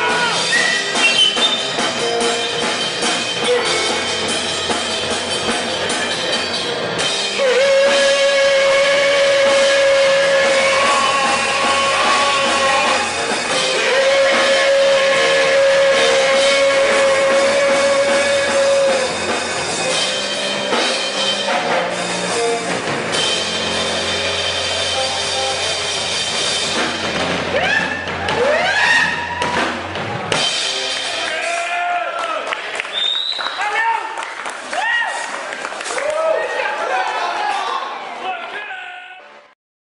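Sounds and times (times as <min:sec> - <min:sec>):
rock band playing: 0:00.0 - 0:32.9
person singing: 0:07.4 - 0:19.4.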